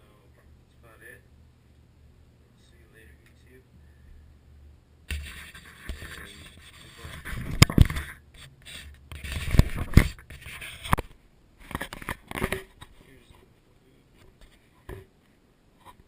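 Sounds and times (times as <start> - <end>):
handling scraping and rustling: 5.1 - 13.5.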